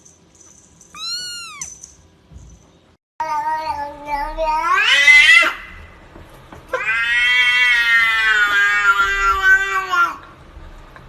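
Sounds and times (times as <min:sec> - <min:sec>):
cat yowling: 0:01.0 - 0:01.8, 0:06.7 - 0:10.2.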